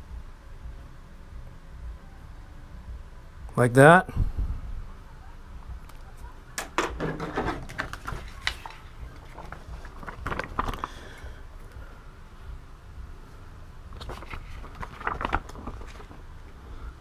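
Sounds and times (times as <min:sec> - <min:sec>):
plastic sheet clicks and rustles: 0:05.9 - 0:11.2, 0:13.9 - 0:16.3.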